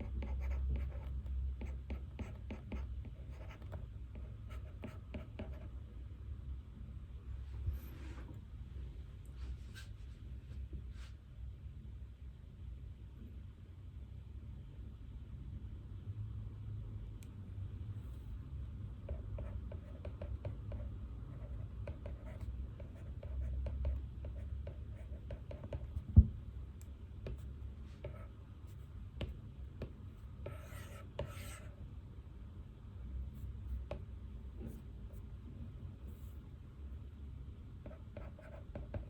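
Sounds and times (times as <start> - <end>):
pen scratching on paper: 0.0 - 5.6, 19.1 - 26.0, 27.3 - 31.8, 37.8 - 39.0
low room rumble: 0.0 - 39.0.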